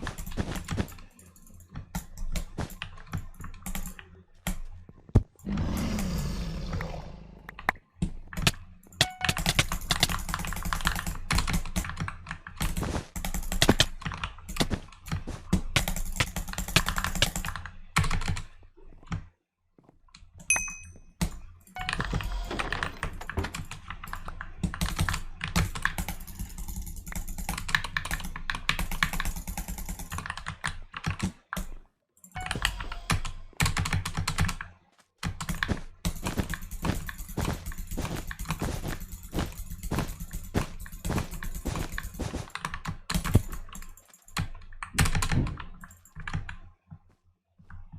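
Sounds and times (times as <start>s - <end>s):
mechanical keyboard clacking: 8.4s - 14.1s.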